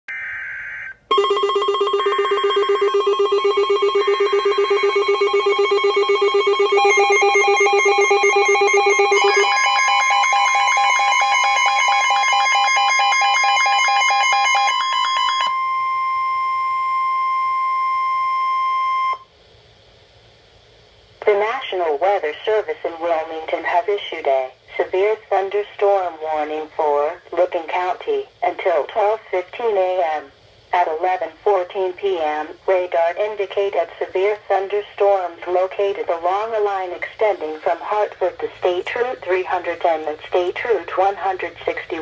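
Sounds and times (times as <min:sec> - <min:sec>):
fast-pulsing electronic alarm tone: 0:00.1 - 0:16.0
steady high tone: 0:00.1 - 0:19.2.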